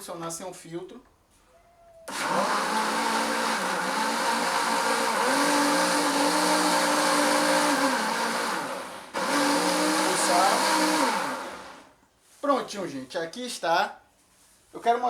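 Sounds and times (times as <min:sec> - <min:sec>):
blender motor running: 0:02.1 - 0:11.9.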